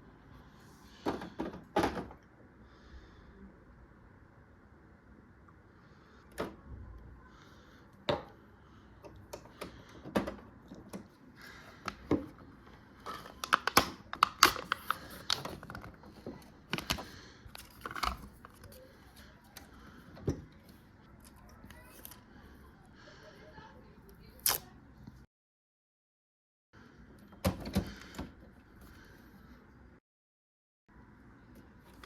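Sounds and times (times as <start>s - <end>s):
packaging crinkling: 13.1s - 15.9s.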